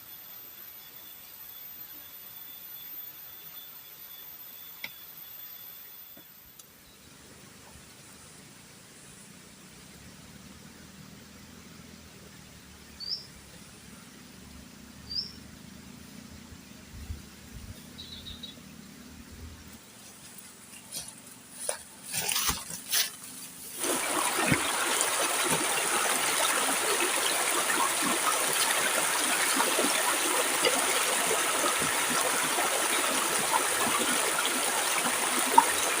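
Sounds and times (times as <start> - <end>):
forest background: 0.0 - 36.0
dense pattering of water: 23.8 - 36.0.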